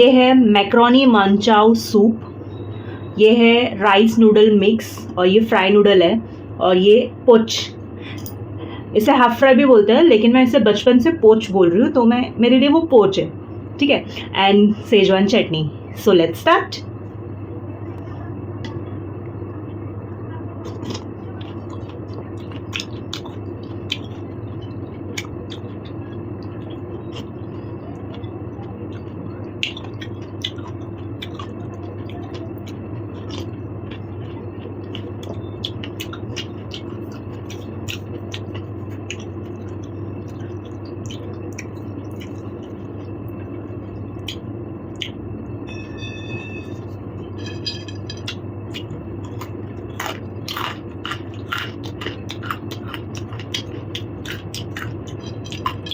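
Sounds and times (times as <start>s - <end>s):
steady low hum: 0.0s - 55.9s
person chewing food: 20.6s - 45.2s, 46.7s - 55.9s
high-pitched tones: 45.5s - 48.4s.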